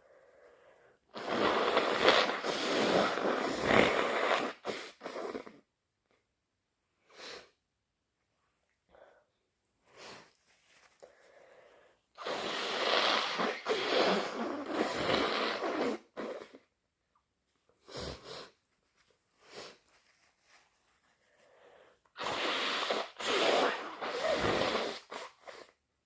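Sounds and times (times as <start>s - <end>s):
person blowing nose: 1.1s - 5.7s, 12.1s - 16.7s, 17.8s - 18.7s, 19.4s - 25.9s
person sniffling: 17.8s - 18.6s.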